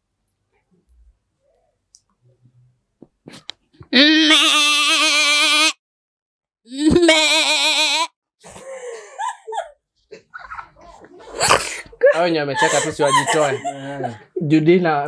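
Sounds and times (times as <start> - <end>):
soft broken voice sounds: 10.0 - 14.9.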